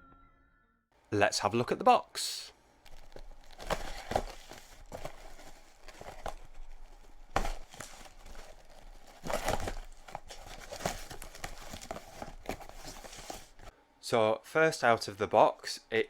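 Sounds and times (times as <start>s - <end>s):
packaging crinkling: 2.8s - 13.7s.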